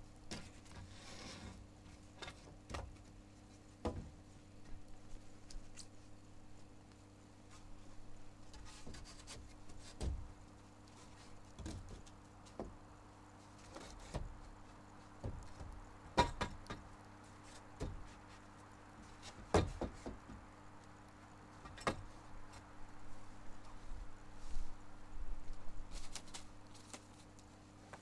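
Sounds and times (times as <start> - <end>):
steady low hum: 0.0 - 28.0
knocks and bumps of handling: 3.8 - 4.8, 8.5 - 10.4, 11.5 - 12.8, 15.2 - 16.9, 19.2 - 20.5.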